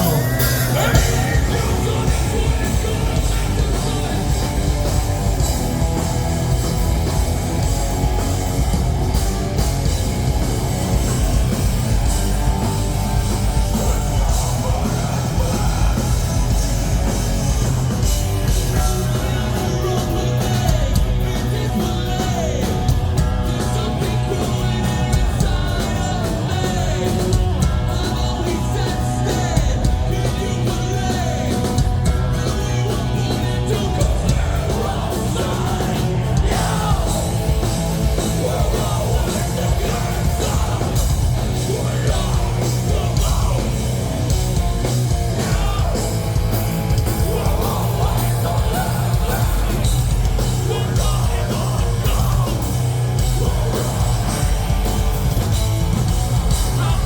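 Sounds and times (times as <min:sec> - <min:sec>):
person singing: 0:00.0 - 0:05.0, 0:18.4 - 0:44.4, 0:45.2 - 0:55.0, 0:56.5 - 0:57.0
bass guitar: 0:00.0 - 0:57.0
distorted electric guitars: 0:00.0 - 0:57.0
drums: 0:00.0 - 0:57.0.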